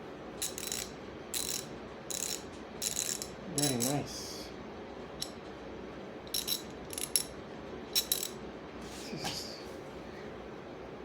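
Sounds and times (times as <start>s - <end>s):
hand ratchet clicking: 0.4s - 3.9s.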